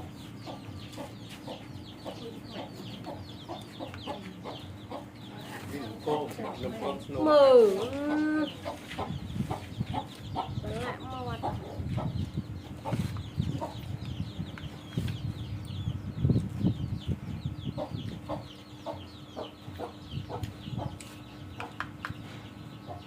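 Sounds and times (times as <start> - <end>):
chickens clucking: 0.0 - 23.0.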